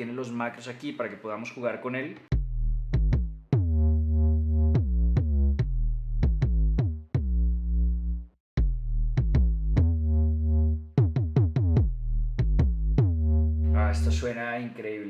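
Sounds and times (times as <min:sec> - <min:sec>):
synth sub-bass notes: 0:02.3 - 0:14.3
drum machine hits: 0:11.0 - 0:12.8.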